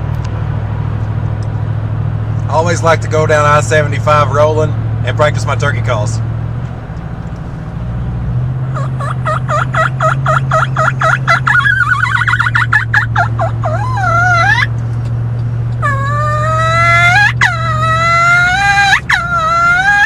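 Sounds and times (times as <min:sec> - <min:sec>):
vehicle low drone: 0:00.0 - 0:20.0
turkey call yelps: 0:08.7 - 0:14.7, 0:15.8 - 0:20.0.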